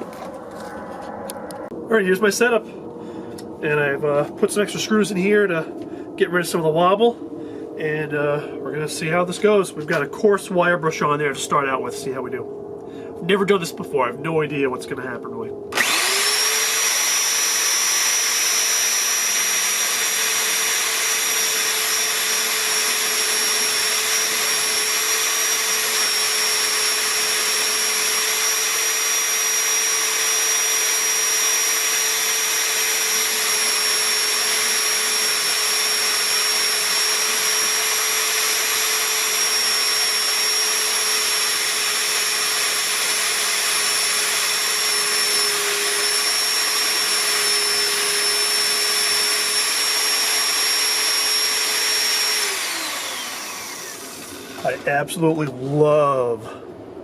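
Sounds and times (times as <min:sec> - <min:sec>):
drill with wire brush whining: 0:15.7 - 0:56.2.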